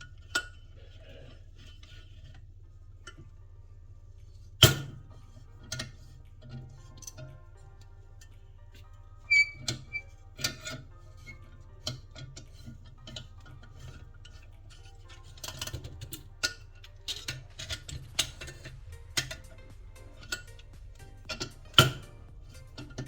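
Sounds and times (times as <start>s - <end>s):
faint background music: 0.0s - 23.0s
metal clicks of valve parts: 9.3s - 20.7s, 21.3s - 23.0s.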